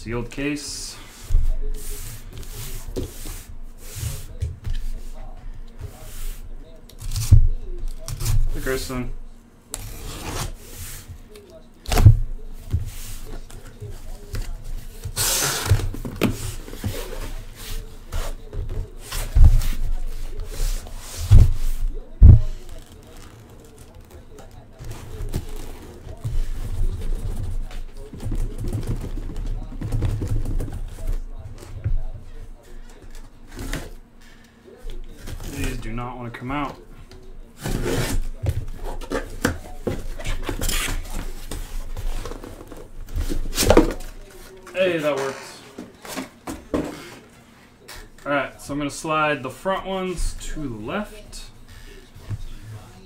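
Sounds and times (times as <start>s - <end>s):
cardboard and plastic rustling: 9.8s - 35.9s, 36.6s - 48.2s.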